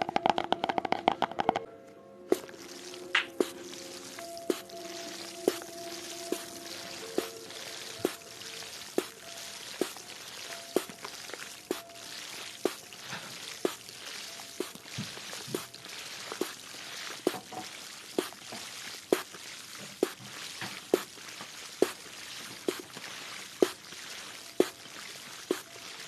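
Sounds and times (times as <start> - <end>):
water running: 2.3 - 26.0.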